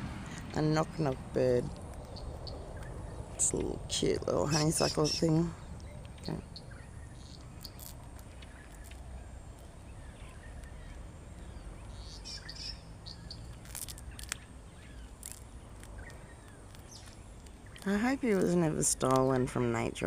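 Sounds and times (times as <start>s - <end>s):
low background rumble: 0.0s - 19.0s
small birds chirping: 0.3s - 20.0s.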